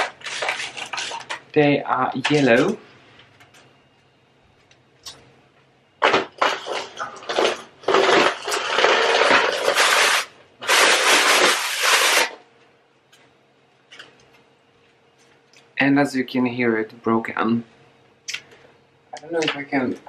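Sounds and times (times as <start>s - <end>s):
window blind harsh noisy bursts: 6.0s - 12.4s.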